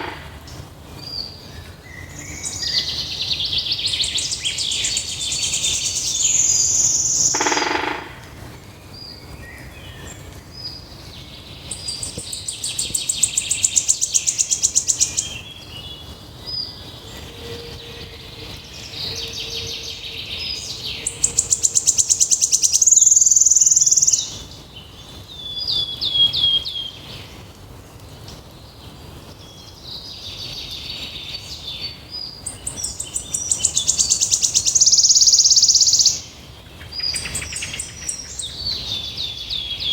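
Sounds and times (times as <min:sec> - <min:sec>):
songbird trilling song: 0:00.0 - 0:27.5, 0:28.3 - 0:39.9
soft bird chirps and whistles: 0:32.4 - 0:36.3.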